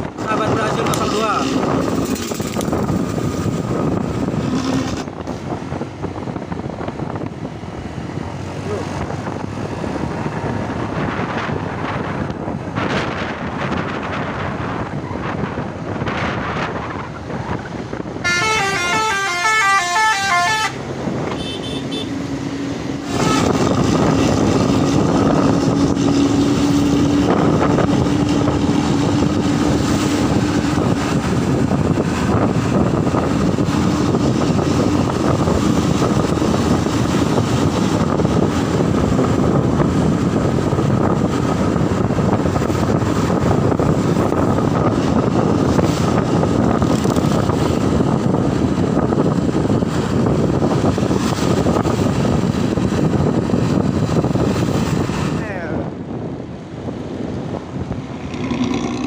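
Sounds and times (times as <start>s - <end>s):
engine and road noise: 0.0s - 59.0s
traffic noise: 0.0s - 59.0s
wind: 0.0s - 59.0s
multi-tone bus horn melody: 18.2s - 22.2s, 23.1s - 23.7s.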